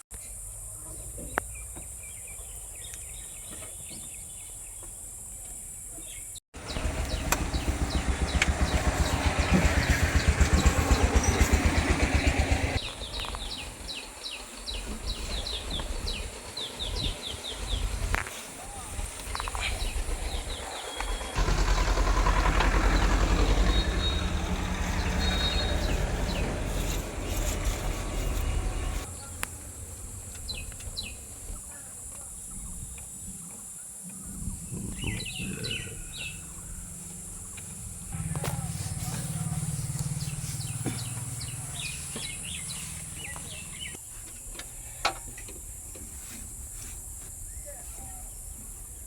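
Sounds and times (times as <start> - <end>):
diesel engine running: 6.6 - 31.5, 35.2 - 44.8.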